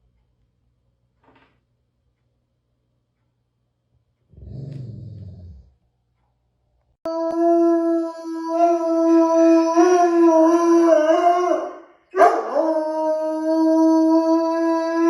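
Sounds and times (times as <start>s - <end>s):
dog howling: 7.1s - 15.0s.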